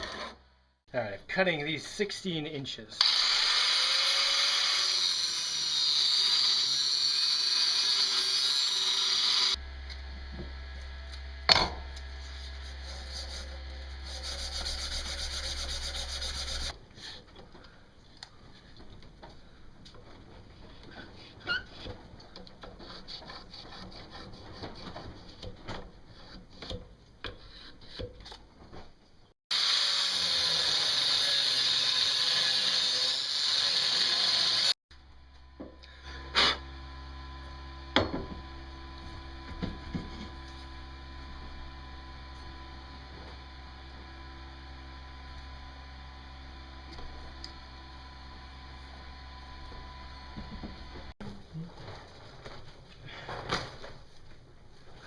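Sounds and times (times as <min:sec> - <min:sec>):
power tool running: 0:03.0 - 0:16.7, 0:29.5 - 0:51.2.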